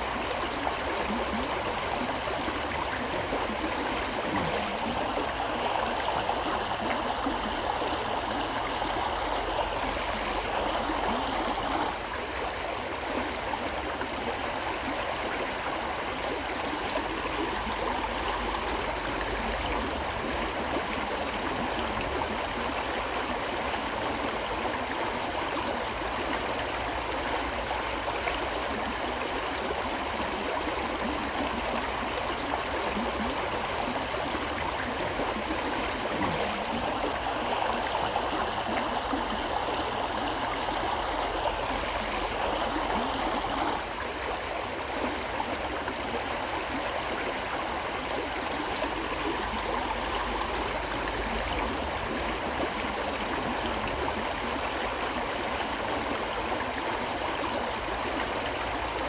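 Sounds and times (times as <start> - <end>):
river water rushing: 33.6 - 44.8.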